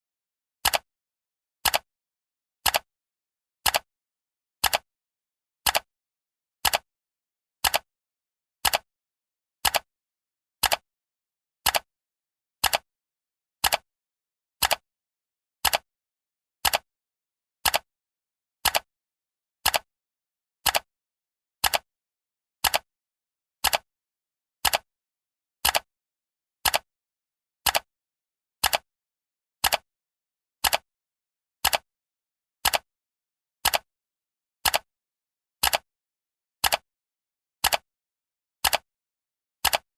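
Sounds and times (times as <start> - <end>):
clock ticking: 8.6 - 8.8, 12.6 - 12.8, 37.6 - 37.8, 39.6 - 39.9.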